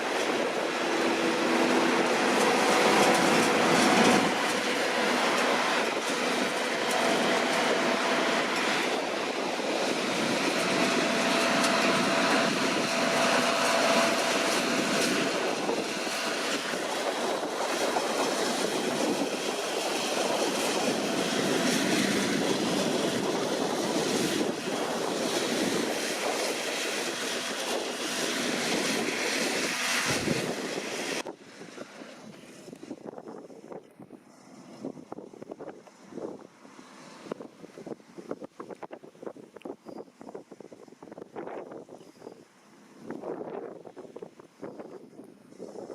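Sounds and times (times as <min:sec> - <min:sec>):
combine harvester clattering: 0:00.0 - 0:33.1.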